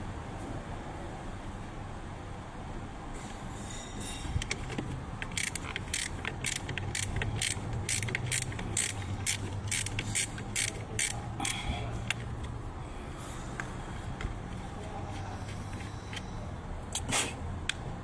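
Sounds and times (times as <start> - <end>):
ratchet wrench clicking: 4.4 - 12.3.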